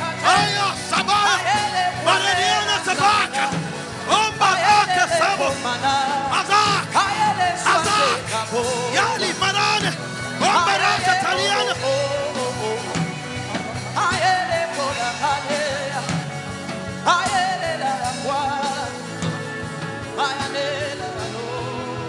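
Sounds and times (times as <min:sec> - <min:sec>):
person singing wavering phrases: 0:00.0 - 0:13.0
worship music: 0:00.0 - 0:22.0.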